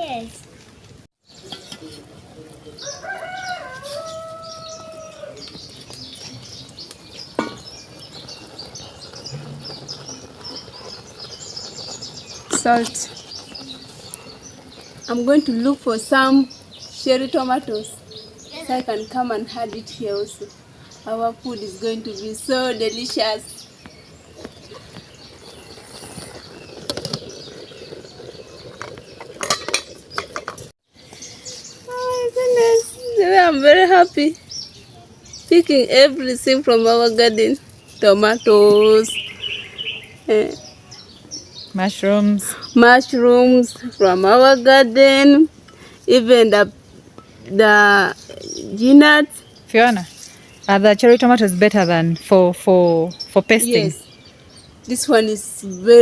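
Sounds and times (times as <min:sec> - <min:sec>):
small birds chirping: 0:00.0 - 0:56.0
rooster crowing: 0:02.8 - 0:05.5.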